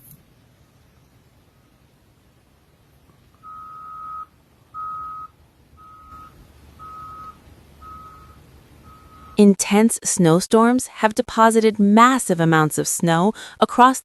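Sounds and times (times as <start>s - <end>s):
faint low engine rumble: 0.0s - 13.6s
vehicle reversing alarm beeping: 3.3s - 9.4s.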